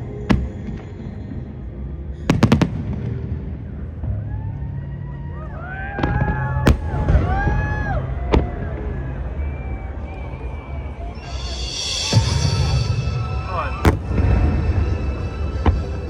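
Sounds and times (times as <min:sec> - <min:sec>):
whistling fireworks: 0:00.3 - 0:03.3, 0:06.0 - 0:16.0
fireworks bangs: 0:11.2 - 0:16.0.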